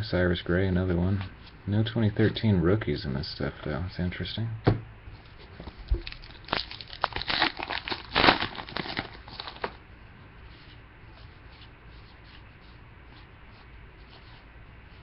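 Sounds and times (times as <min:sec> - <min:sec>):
card pack wrapper crinkling and tearing: 0:06.0 - 0:09.8.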